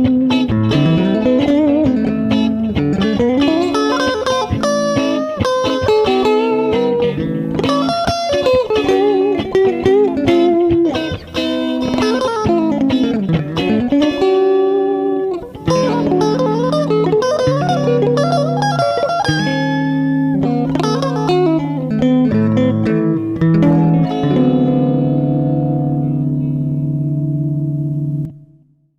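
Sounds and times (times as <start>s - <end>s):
clean electric guitar melody: 0.0s - 28.9s.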